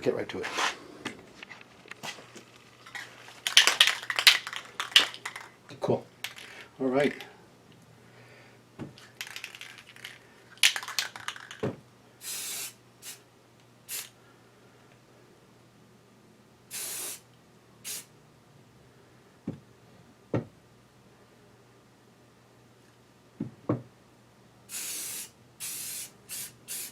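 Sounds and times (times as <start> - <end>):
spray paint hissing: 12.2 - 13.2, 13.9 - 14.1, 16.7 - 17.2, 17.8 - 18.1, 24.7 - 26.9.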